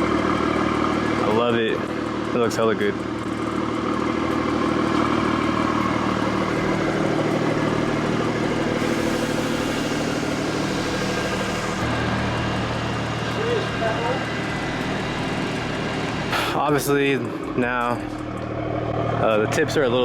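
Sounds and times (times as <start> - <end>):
car engine idling: 0.0 - 20.0
bright hiss: 7.4 - 12.2.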